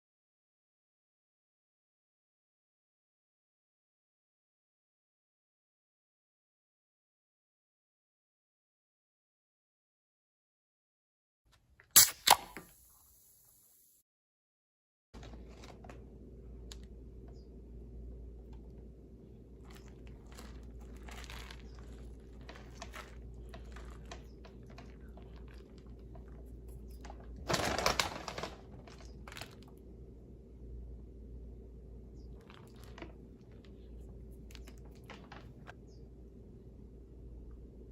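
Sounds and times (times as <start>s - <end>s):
chewing clicks and crackles: 18.4s - 29.9s, 32.2s - 35.9s.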